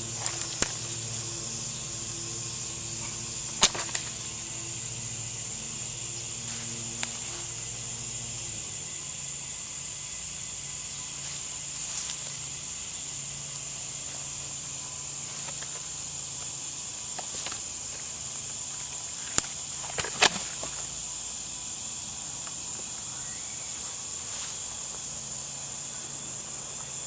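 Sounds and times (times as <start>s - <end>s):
low hum: 0.0s - 17.0s
cricket-like insect trill: 0.0s - 27.0s.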